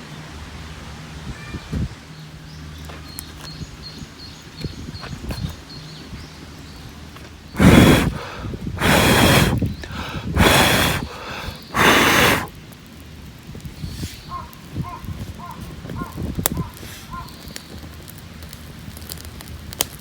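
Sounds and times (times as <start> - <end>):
hard puffs of breath: 7.6 - 12.5.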